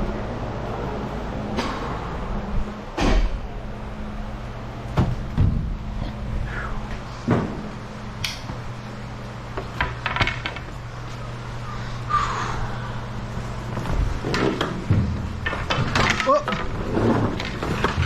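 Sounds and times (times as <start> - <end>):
steady low hum: 0.0 - 18.0
knocks and clattering: 9.5 - 10.8, 13.7 - 18.0.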